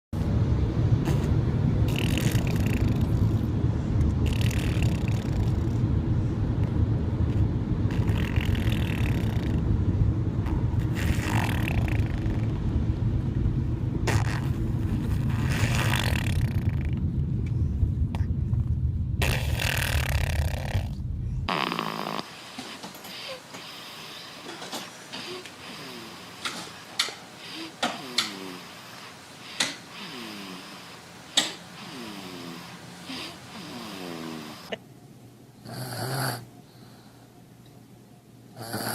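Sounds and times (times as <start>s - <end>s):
steady low rumble: 0.1s - 35.7s
baby snoring: 1.9s - 3.5s, 4.2s - 5.8s, 7.9s - 9.7s, 10.4s - 12.6s, 14.0s - 17.0s, 19.2s - 34.8s, 35.6s - 36.5s, 38.6s - 38.9s.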